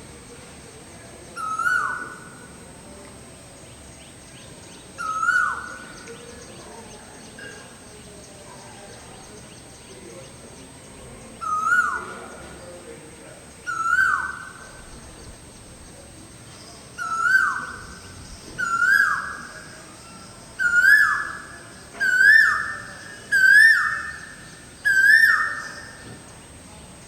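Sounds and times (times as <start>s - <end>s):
cuckoo calling: 17.0s - 19.8s, 20.6s - 26.0s.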